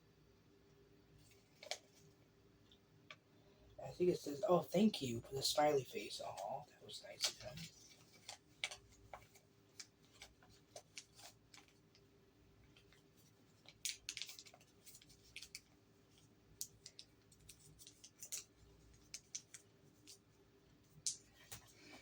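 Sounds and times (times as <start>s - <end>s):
paper packaging rustling: 5.6s - 11.9s, 12.7s - 20.3s.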